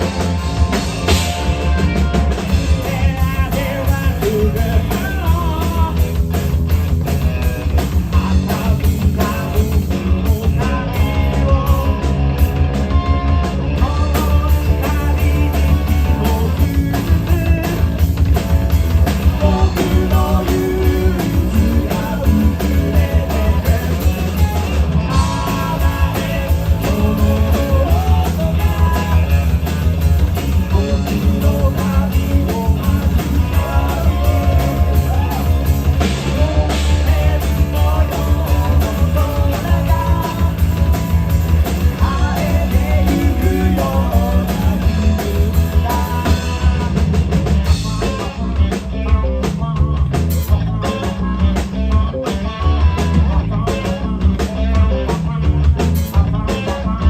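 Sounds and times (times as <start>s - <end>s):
drums: 0.0s - 57.0s
electric guitar: 0.0s - 57.0s
heavy bass line: 0.0s - 57.0s
person singing: 19.2s - 29.8s, 30.4s - 47.2s.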